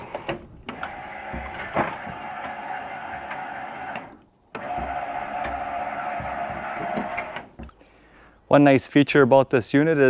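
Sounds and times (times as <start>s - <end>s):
electric motor whirring: 0.0s - 7.6s.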